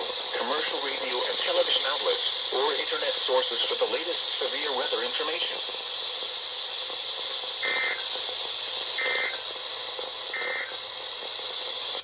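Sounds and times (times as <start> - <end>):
radio hiss: 0.0 - 12.0
digital data tone bursts: 7.6 - 8.1, 9.0 - 9.4, 10.3 - 10.8.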